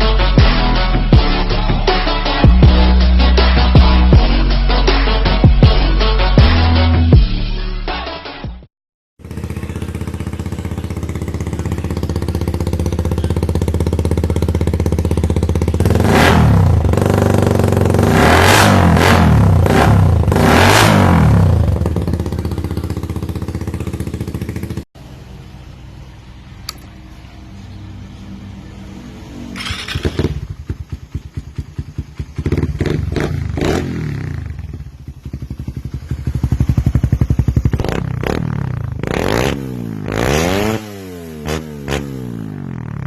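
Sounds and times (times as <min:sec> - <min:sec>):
motorcycle engine revving: 0:09.2 - 0:25.4, 0:28.5 - 0:43.0
steady engine hum: 0:09.2 - 0:43.0.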